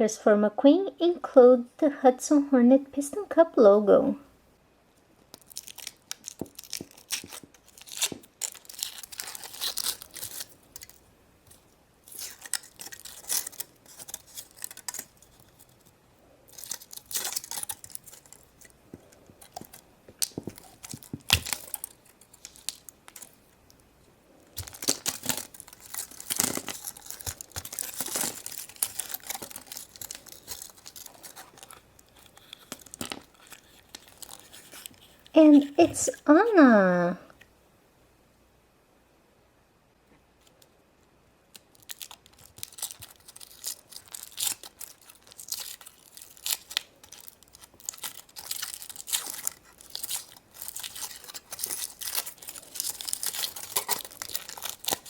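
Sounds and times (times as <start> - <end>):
foil wrapping crinkling: 5.3 - 23.8, 24.4 - 35.9, 41.5 - 55.0.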